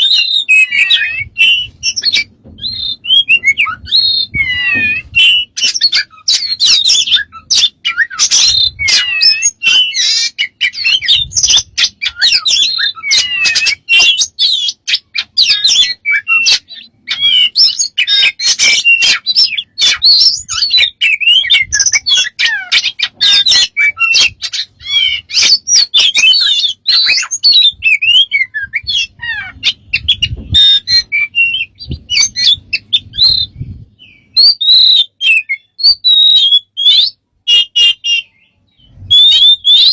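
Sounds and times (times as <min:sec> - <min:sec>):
bird chirping whistling and squawking: 0:00.0 - 0:39.9.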